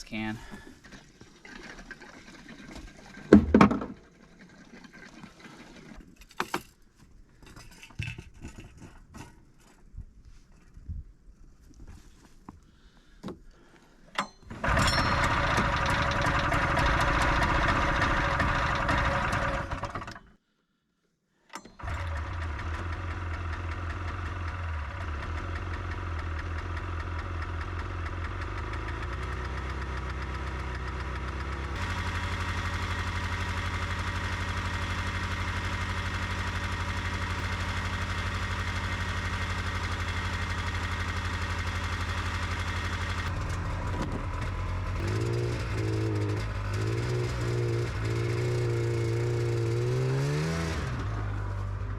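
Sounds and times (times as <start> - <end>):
snowmobile engine running: 14.5 - 20.1, 21.8 - 51.9.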